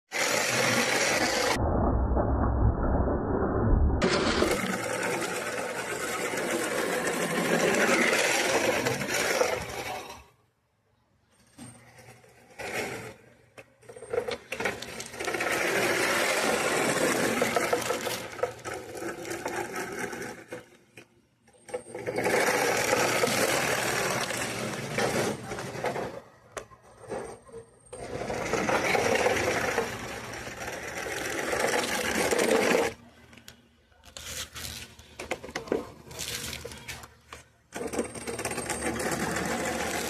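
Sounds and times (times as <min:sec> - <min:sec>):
small electric motor and gears whirring: 0:36.1 - 0:40.0.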